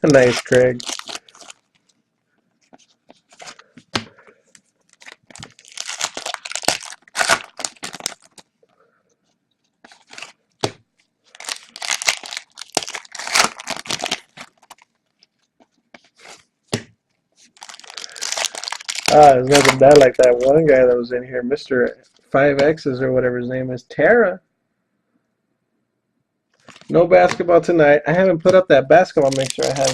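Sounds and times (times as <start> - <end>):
foil wrappers tearing and crinkling: 0.0 - 1.8, 4.9 - 8.5, 9.9 - 10.4, 11.3 - 16.4, 17.4 - 20.5, 29.2 - 29.9.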